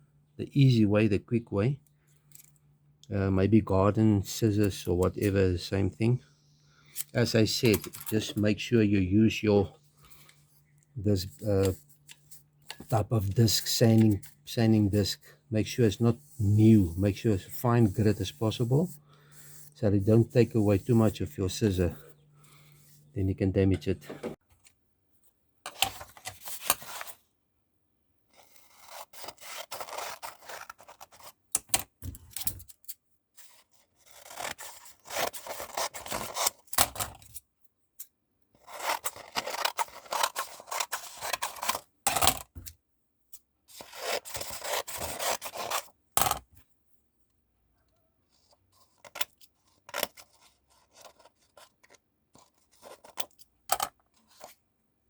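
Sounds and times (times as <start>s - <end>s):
scissors cutting paper: 28.4s - 31.7s, 34.0s - 37.2s, 38.6s - 41.8s, 43.8s - 45.9s.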